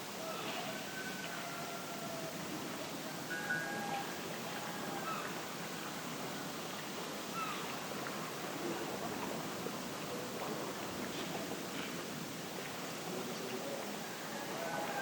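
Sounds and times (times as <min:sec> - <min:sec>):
steady background hiss: 0:00.0 - 0:15.0
faint animal calls: 0:03.2 - 0:05.4.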